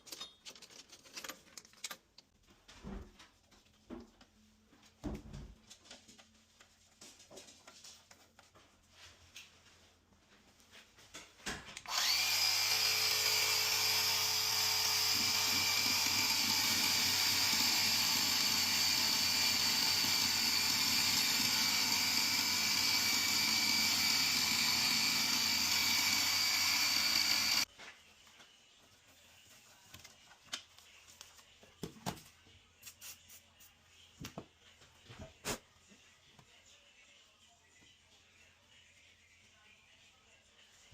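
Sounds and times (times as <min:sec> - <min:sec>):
high-speed electric motor whine: 0:11.9 - 0:27.6.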